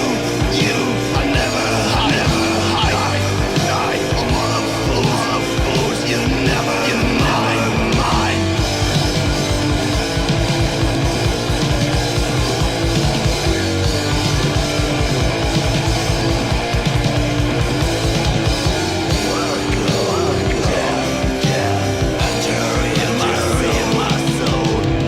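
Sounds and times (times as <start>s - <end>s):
bass guitar: 0.0s - 25.0s
distorted electric guitar: 0.0s - 25.0s
fast drumming: 0.0s - 25.0s.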